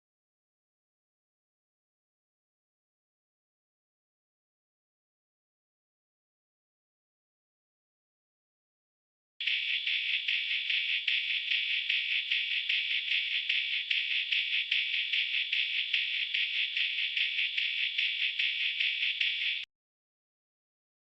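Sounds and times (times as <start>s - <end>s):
tinny music from headphones: 9.4s - 19.7s.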